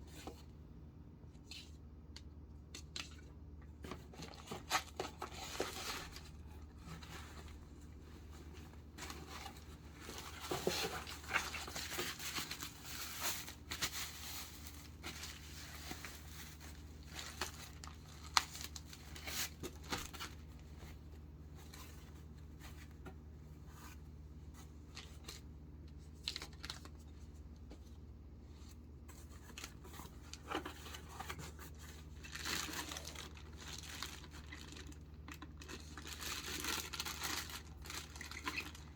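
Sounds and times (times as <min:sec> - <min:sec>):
packaging rustling and tearing: 0:03.8 - 0:21.0, 0:26.1 - 0:27.1, 0:29.2 - 0:38.9.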